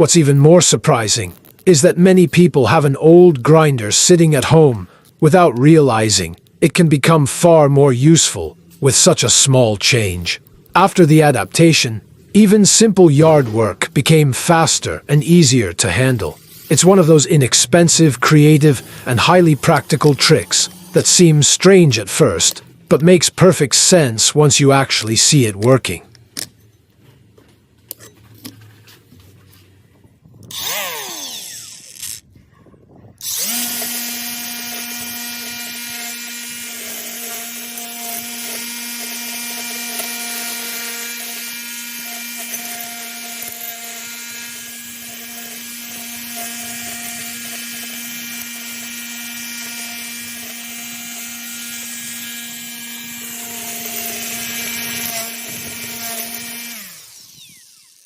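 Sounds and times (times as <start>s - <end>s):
angle grinder running: 16.1s - 22.8s, 30.5s - 32.2s, 33.2s - 58.0s.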